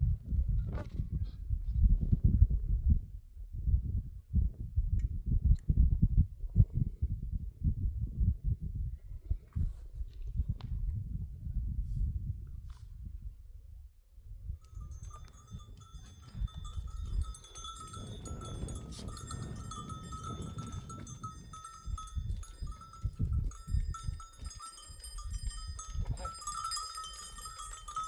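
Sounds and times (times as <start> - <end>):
animal bells clinking: 14.6 - 28.0.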